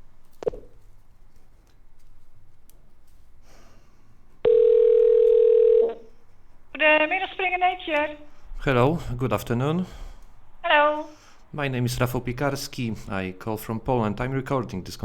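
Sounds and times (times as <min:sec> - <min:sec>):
telephone ringing tone: 0:00.4 - 0:00.8, 0:04.4 - 0:06.2.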